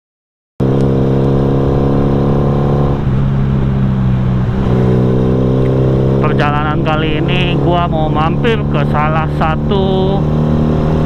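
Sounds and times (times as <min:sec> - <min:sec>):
motorcycle engine running: 0:00.6 - 0:11.0.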